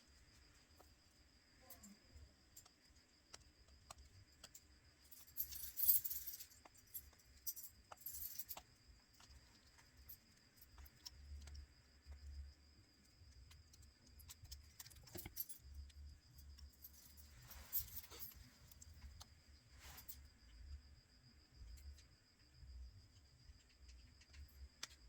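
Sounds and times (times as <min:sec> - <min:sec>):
small tools clicking and clinking: 0:13.7 - 0:16.0, 0:16.6 - 0:19.3.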